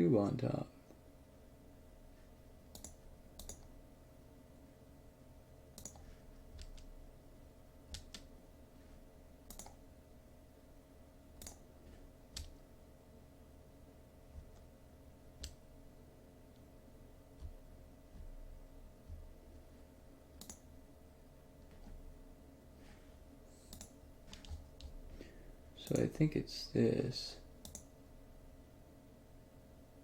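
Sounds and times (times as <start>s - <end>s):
faint steady hum: 0.0s - 30.0s
computer mouse clicking: 2.7s - 3.8s, 5.7s - 7.0s, 7.9s - 8.3s, 9.4s - 9.8s, 11.4s - 11.7s, 12.3s - 12.6s, 15.4s - 15.6s, 20.4s - 20.7s, 23.6s - 25.0s, 27.6s - 27.9s.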